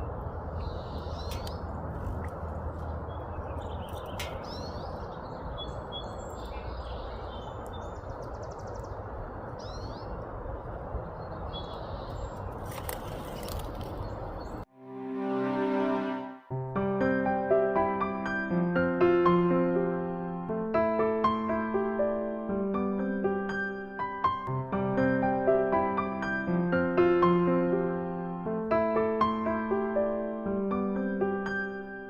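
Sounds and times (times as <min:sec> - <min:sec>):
songbirds chirping: 0:00.0 - 0:14.7
soft held chord music: 0:14.7 - 0:32.0.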